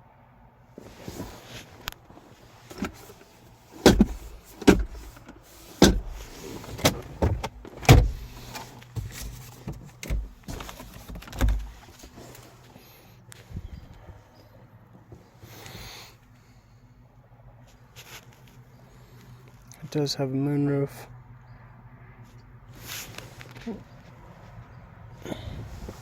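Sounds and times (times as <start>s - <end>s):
knocks and clunks: 2.6s - 12.2s
heavy thuds: 3.8s - 12.1s.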